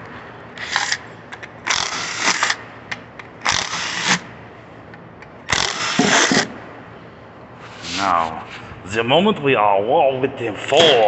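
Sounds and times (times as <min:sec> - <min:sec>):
impact wrench hammering: 0:05.4 - 0:06.6.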